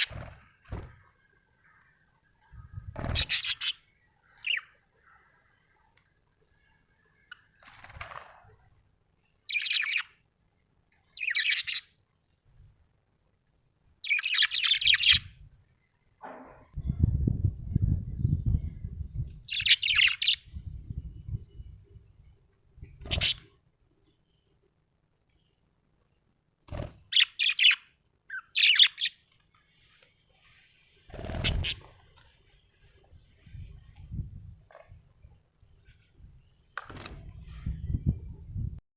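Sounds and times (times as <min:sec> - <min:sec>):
budgerigar chirping: 0:19.5 - 0:20.4, 0:27.1 - 0:29.2.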